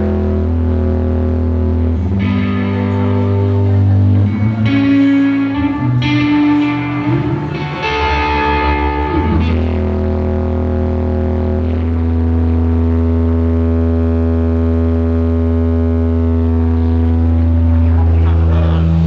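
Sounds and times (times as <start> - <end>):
distorted electric guitar: 0.0 - 19.0.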